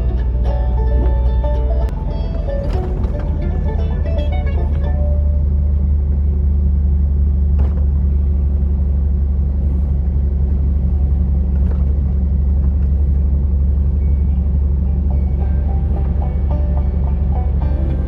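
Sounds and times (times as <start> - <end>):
road rumble: 0.0 - 18.0
truck engine drone: 0.0 - 18.0.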